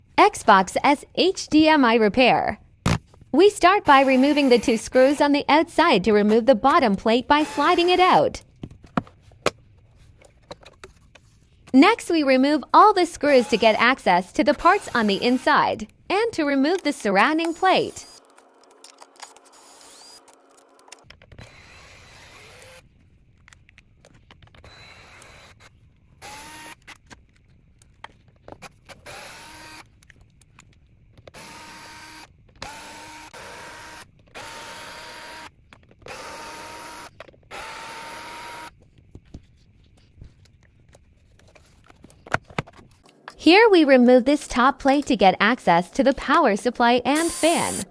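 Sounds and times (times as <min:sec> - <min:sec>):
electric screwdriver whirring: 0:03.8 - 0:05.4, 0:06.2 - 0:08.4, 0:13.2 - 0:15.8, 0:16.7 - 0:22.9, 0:24.6 - 0:27.1, 0:28.9 - 0:29.9, 0:31.3 - 0:38.8, 0:47.1 - 0:47.9
small clicks and handling noises: 0:08.0 - 0:11.8, 0:16.7 - 0:19.6, 0:20.2 - 0:21.6, 0:22.8 - 0:29.1, 0:29.8 - 0:31.4, 0:35.4 - 0:36.2, 0:37.0 - 0:37.5, 0:38.7 - 0:43.4.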